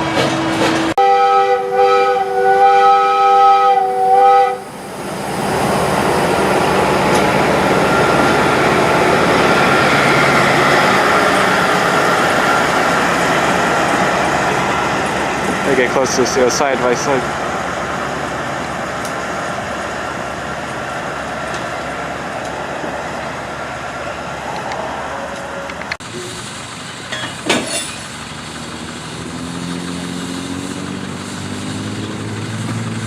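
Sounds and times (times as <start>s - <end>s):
steam locomotive whistle chord: 1.0s - 4.8s
escaping steam hissing: 1.8s - 18.4s, 26.0s - 33.0s.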